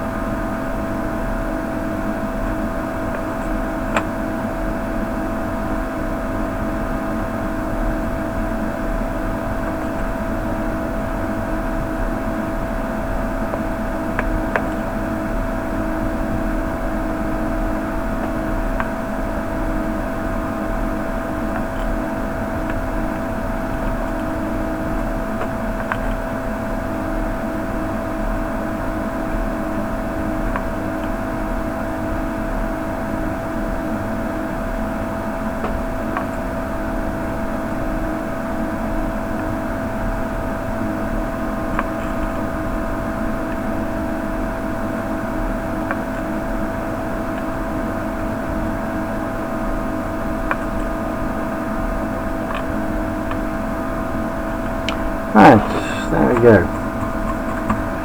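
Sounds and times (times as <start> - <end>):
constant high tone: 55.4 - 56.9.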